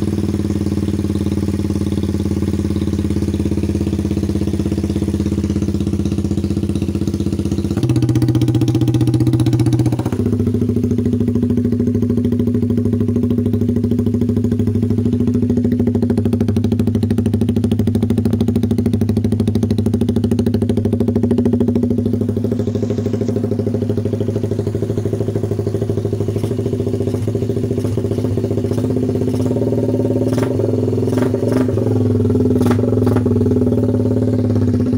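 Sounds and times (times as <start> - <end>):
motorcycle engine idling: 0.0 - 34.9.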